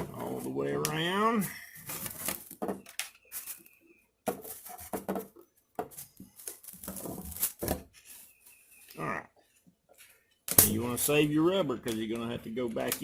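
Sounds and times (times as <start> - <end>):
screen mesh rustling: 4.3 - 8.9.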